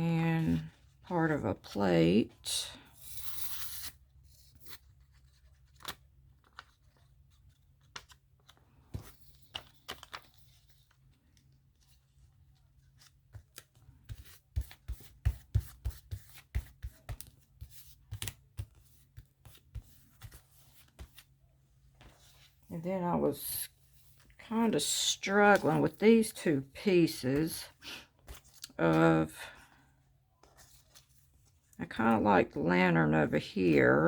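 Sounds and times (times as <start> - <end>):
paper rustling: 4.4 - 22.7, 23.8 - 31.8.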